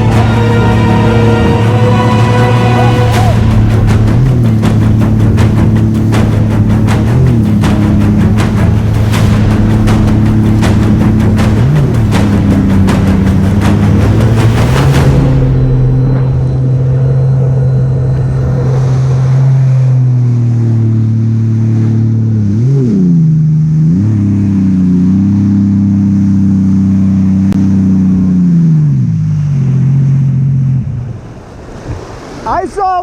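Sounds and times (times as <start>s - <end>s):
jet ski engine running hard: 17.0s - 31.3s.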